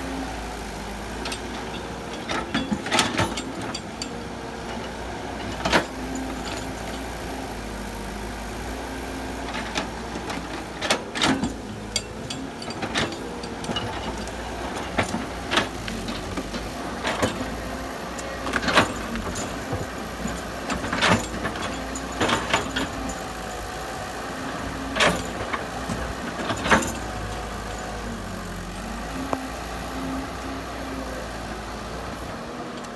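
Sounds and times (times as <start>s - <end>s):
excavator diesel engine running: 0.0s - 32.9s.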